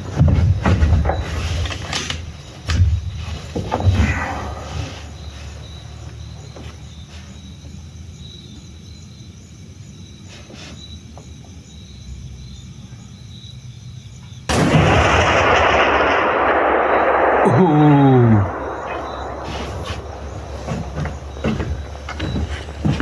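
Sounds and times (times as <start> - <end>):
gunshot: 14.5 - 22.4
low outdoor rumble: 14.5 - 23.0.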